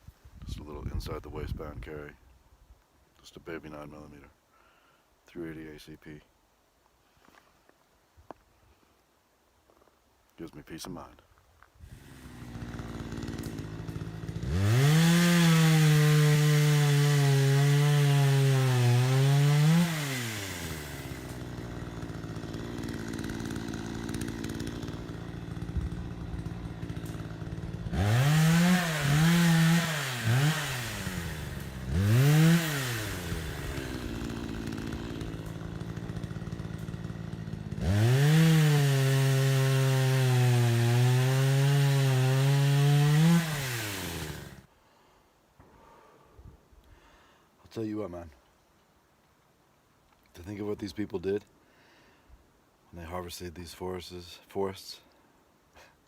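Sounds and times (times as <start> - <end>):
chainsaw cutting wood: 11.8 - 44.7.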